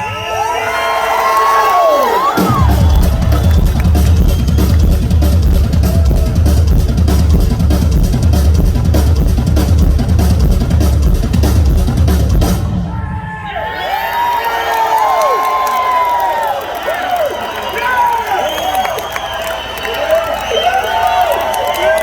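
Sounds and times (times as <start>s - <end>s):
crowd cheering and whistling: 0.0s - 7.3s, 12.6s - 22.0s
rock drum solo: 2.2s - 13.0s.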